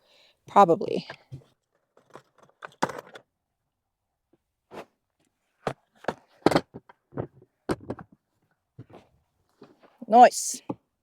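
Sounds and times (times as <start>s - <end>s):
objects knocking and clunking: 1.1s - 3.2s, 5.6s - 9.8s.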